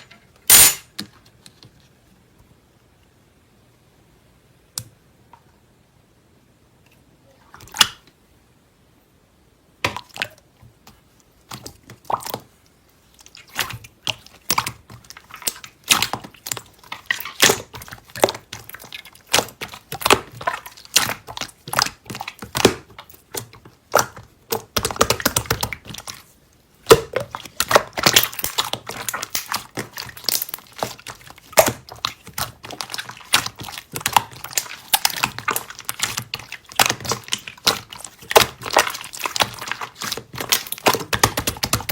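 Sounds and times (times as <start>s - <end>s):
sticky slime clicks and crackles: 26.9s - 41.9s.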